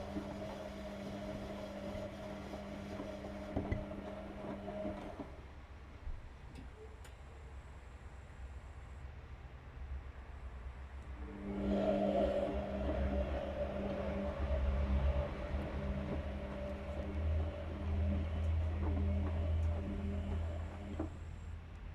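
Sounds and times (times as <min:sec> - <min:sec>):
washing machine drum whirring: 0:00.0 - 0:05.7, 0:11.1 - 0:21.6
low rumble: 0:10.9 - 0:21.5.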